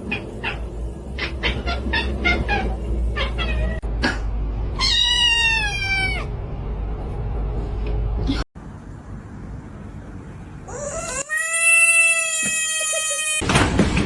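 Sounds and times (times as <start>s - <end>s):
cat meowing: 4.8s - 6.3s.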